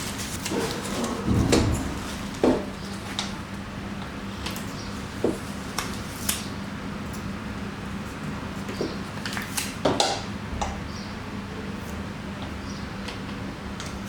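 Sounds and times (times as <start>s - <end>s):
steady low hum: 0.0s - 4.9s.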